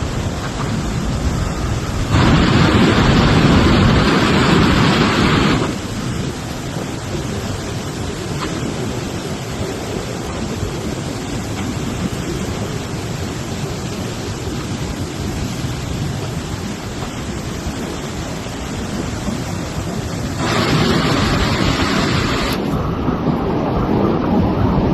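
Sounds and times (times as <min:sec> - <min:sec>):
river rushing in flood: 0:00.0 - 0:24.9.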